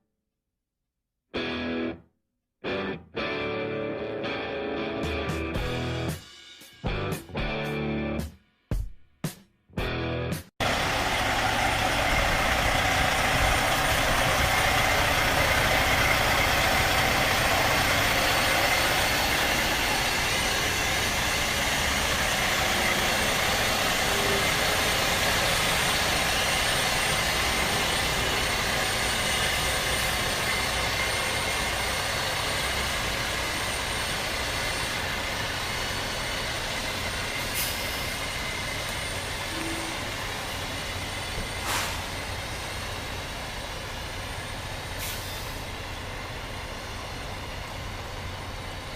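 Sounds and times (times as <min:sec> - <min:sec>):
semi truck engine running: 0:10.6 - 0:48.9.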